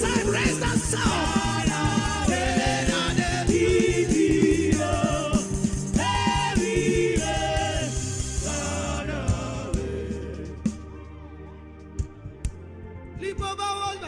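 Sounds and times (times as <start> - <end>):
band with steady beat: 0.0 - 10.9
voices singing wordless melody: 0.0 - 11.5.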